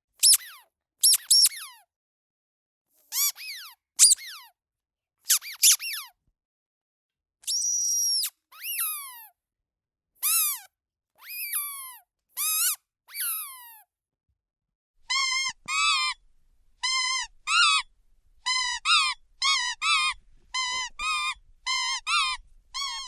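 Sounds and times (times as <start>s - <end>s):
squeaky dog toy squeaking: 0.2s - 1.8s, 3.1s - 4.5s, 5.3s - 6.1s, 7.4s - 9.3s, 10.2s - 13.8s, 15.0s - 23.0s.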